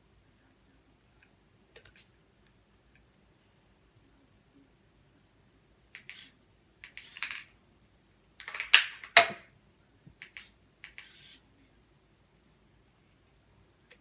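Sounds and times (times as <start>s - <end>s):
spring launcher clacks: 8.4s - 9.4s.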